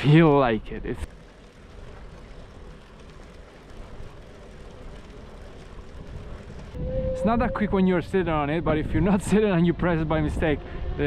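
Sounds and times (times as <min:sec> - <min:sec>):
tyres rolling on road: 0:00.0 - 0:11.0
wind on microphone: 0:05.9 - 0:11.0.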